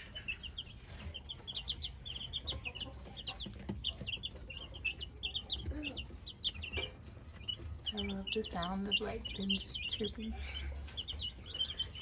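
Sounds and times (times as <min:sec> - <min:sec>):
chicks chirping: 0:00.0 - 0:12.0.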